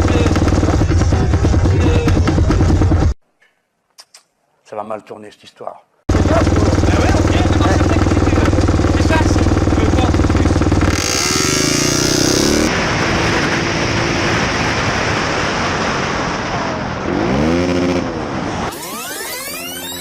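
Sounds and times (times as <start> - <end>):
engine revving: 0.0 - 3.2, 6.1 - 20.0
vehicle engines running: 0.0 - 3.2, 6.1 - 15.5
road noise: 6.1 - 20.0.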